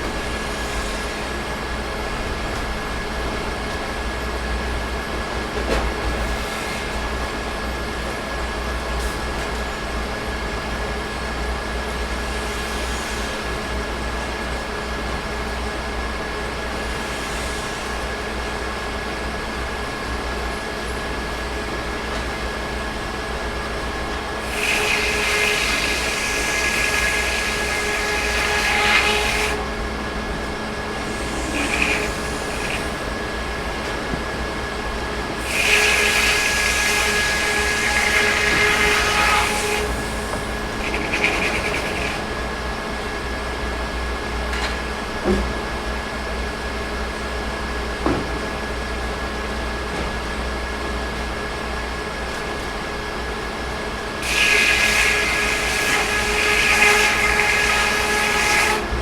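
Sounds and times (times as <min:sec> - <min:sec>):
sawmill saw cutting logs: 0:24.1 - 0:33.6, 0:35.3 - 0:42.4, 0:54.2 - 0:59.0.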